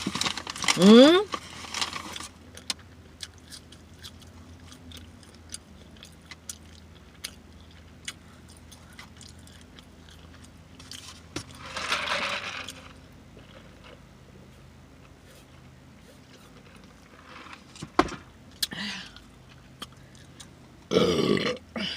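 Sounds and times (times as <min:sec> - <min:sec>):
low steady hum: 0:00.0 - 0:21.9
chewing and lip smacking: 0:02.6 - 0:11.3, 0:18.5 - 0:20.9.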